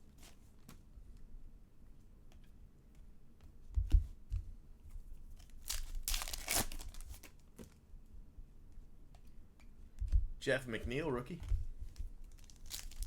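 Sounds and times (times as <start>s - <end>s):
packaging crinkling: 5.4s - 7.5s, 11.9s - 13.0s.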